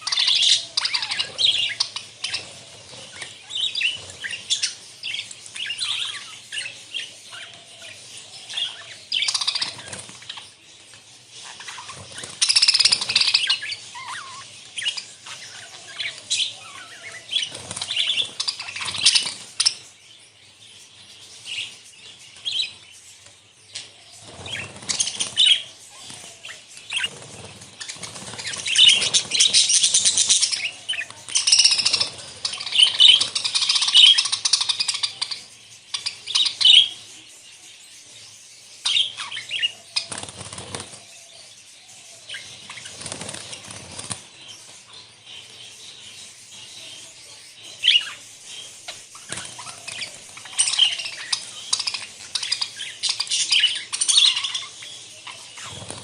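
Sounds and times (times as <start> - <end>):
budgerigars chattering and chirping: 0.0 - 56.0
wings flapping: 17.4 - 19.8, 24.2 - 34.3, 40.0 - 41.0, 42.6 - 44.3, 49.1 - 52.6, 55.6 - 56.0.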